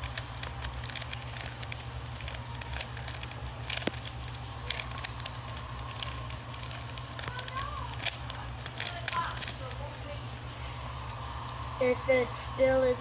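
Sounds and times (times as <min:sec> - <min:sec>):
plastic puzzle cube clicking: 0:00.1 - 0:09.6.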